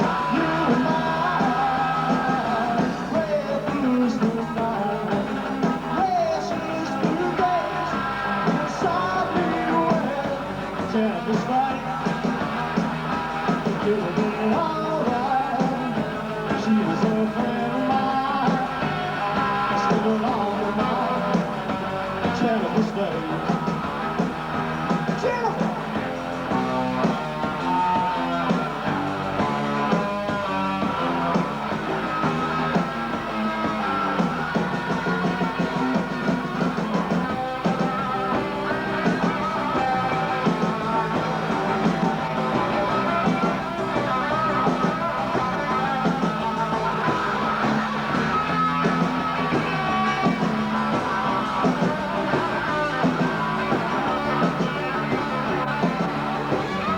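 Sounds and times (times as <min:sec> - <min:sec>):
rock band playing live: 0:00.0 - 0:56.9.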